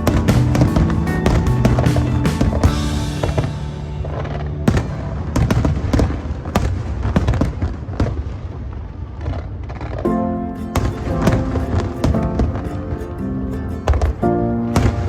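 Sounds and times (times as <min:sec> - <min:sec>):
show music: 0:00.0 - 0:06.3, 0:10.1 - 0:15.0
fireworks bangs and crackles: 0:00.0 - 0:10.1, 0:10.7 - 0:13.0, 0:13.8 - 0:15.0.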